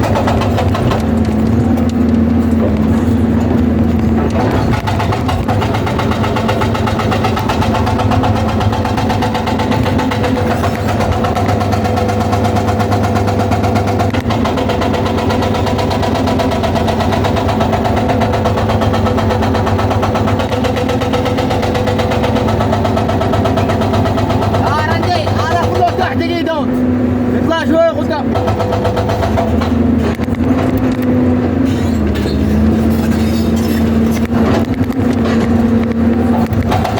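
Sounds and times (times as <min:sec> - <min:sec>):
hydraulic breaker hammering stone: 0:00.0 - 0:26.7, 0:27.6 - 0:36.9
excavator engine under load: 0:00.0 - 0:36.9.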